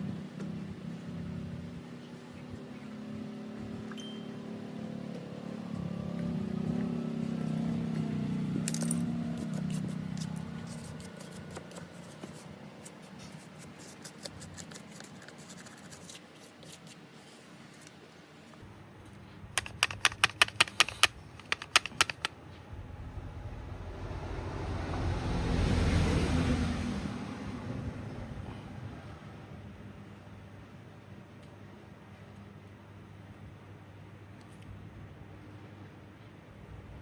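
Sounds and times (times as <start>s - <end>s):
small hard objects clicking: 19.6s - 22.3s
low hum: 22.4s - 28.4s.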